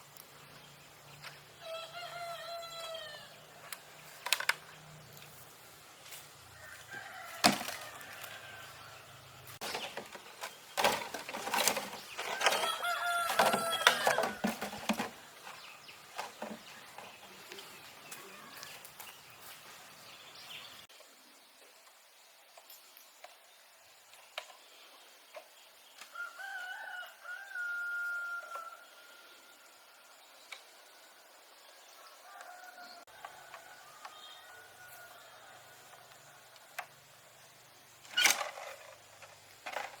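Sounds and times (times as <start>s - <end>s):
rooster crowing: 1.6s - 3.4s, 6.5s - 9.3s, 12.3s - 14.6s, 26.1s - 29.5s, 32.0s - 36.7s.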